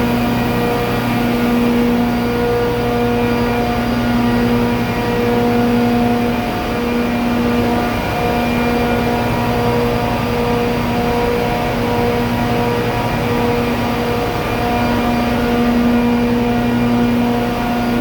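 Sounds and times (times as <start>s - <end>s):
compressor machine drone: 0.0s - 18.0s.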